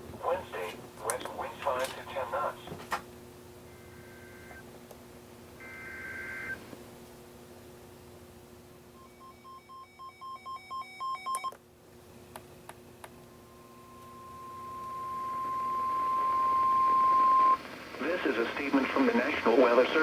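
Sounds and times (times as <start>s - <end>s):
faint low hum: 0.0s - 20.0s
steady warning alarm tone: 8.8s - 11.6s, 13.2s - 17.6s
weather radio beeping: 13.3s - 20.0s.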